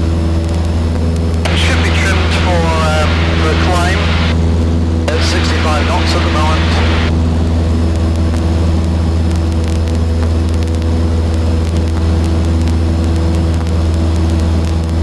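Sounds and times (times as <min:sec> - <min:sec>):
propeller plane engine droning: 0:00.0 - 0:15.0
faint clicks: 0:07.9 - 0:15.0.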